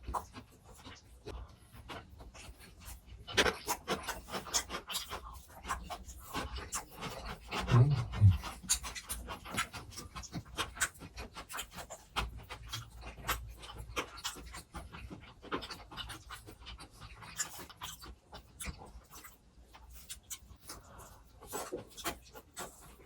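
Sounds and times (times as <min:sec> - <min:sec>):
heavy low thuds: 0:07.7 - 0:08.4.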